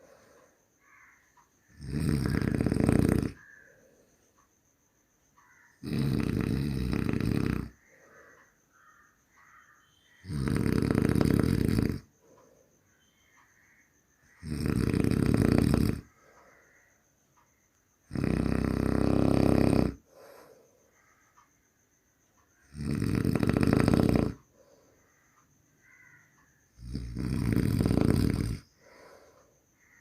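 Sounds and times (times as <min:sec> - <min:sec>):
person snoring: 0:01.7 - 0:03.5, 0:05.8 - 0:07.8, 0:10.2 - 0:12.1, 0:14.4 - 0:16.1, 0:18.1 - 0:20.6, 0:22.7 - 0:24.5, 0:26.8 - 0:29.4.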